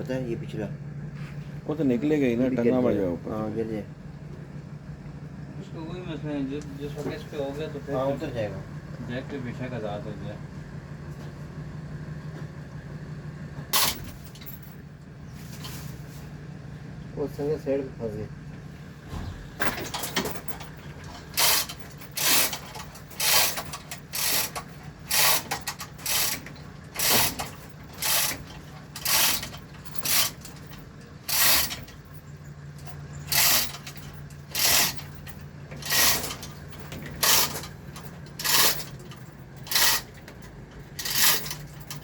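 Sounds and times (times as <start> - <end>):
ratchet clicking: 13.8 - 14.7, 19.6 - 42.0.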